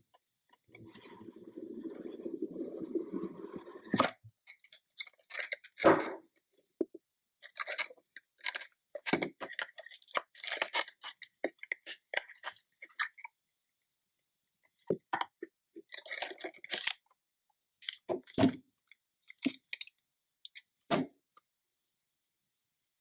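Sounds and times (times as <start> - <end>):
plastic and cardboard clicks and scrapes: 3.8 - 6.3, 7.4 - 13.3.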